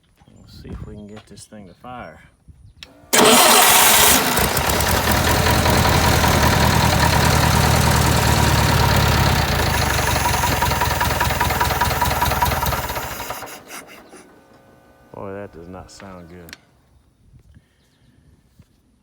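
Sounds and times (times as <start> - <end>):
engine cranking and chugging: 2.9 - 16.5.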